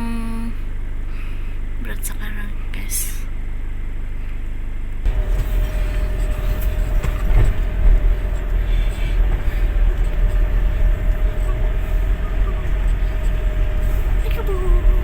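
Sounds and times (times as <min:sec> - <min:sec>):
truck engine rumbling: 0:04.0 - 0:15.0.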